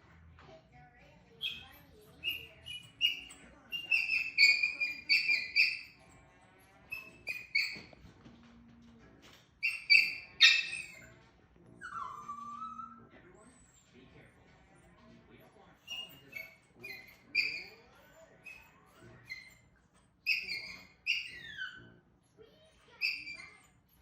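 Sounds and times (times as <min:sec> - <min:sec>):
high-pitched squeaks: 0:01.4 - 0:06.1, 0:06.9 - 0:08.0, 0:09.6 - 0:11.1, 0:20.2 - 0:21.9.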